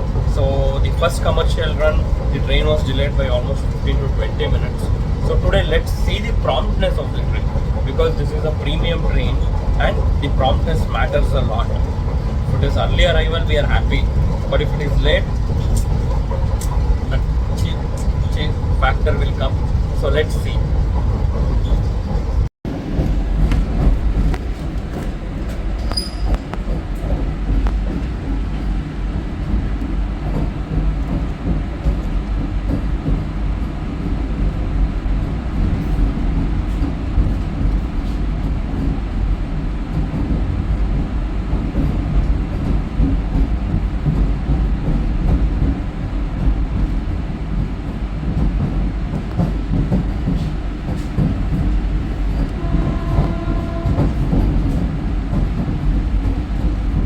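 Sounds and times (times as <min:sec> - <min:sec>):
electric train running: 0:00.0 - 0:57.0.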